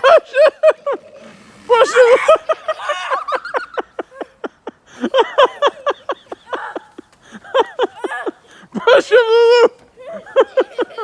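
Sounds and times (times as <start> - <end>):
excited voices calling out: 0.0 - 4.4, 6.4 - 11.0.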